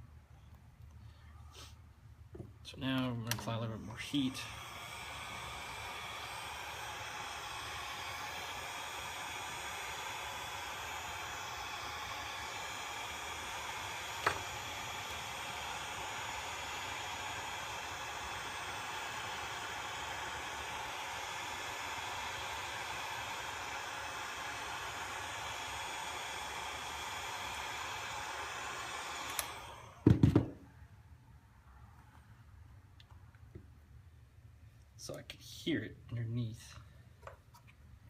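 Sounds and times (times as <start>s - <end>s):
heat gun blowing hot air: 3.4s - 30.5s.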